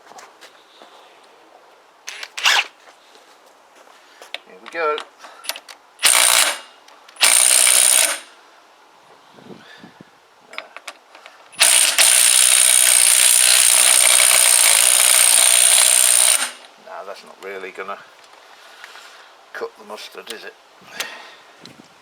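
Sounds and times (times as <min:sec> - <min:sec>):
impact wrench bursts: 0:02.1 - 0:02.7, 0:05.5 - 0:08.4, 0:11.6 - 0:16.7.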